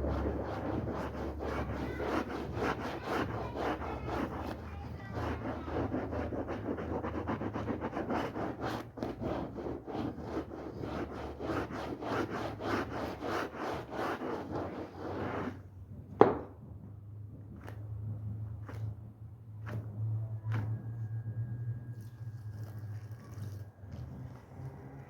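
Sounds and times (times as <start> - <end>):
brush scrubbing a rug: 0.0 - 15.8, 18.4 - 19.0, 22.0 - 25.0.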